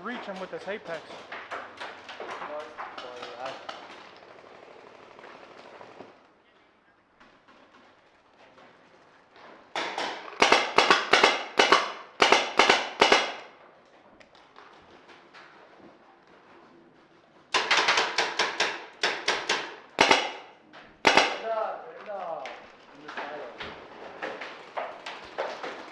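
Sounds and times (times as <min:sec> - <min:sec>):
paintball marker firing: 0:09.8 - 0:13.5, 0:17.5 - 0:21.6.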